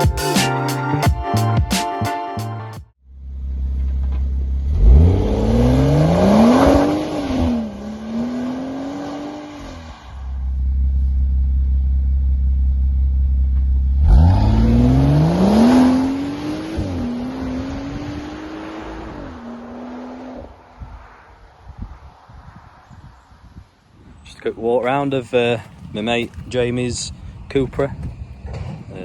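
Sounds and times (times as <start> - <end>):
car engine accelerating hard: 3.3 - 21.3.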